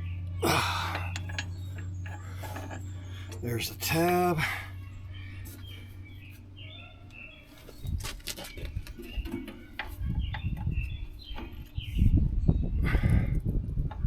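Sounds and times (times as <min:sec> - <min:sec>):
metal clicks and knocks: 0:00.8 - 0:03.5.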